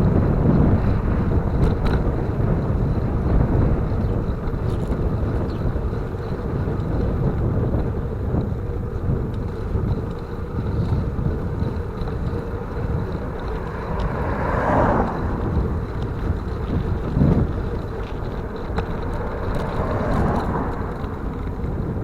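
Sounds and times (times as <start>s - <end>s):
road noise: 0.0s - 22.0s
wind rumbling on microphone: 0.0s - 22.0s
vehicle rushing past: 12.2s - 22.0s.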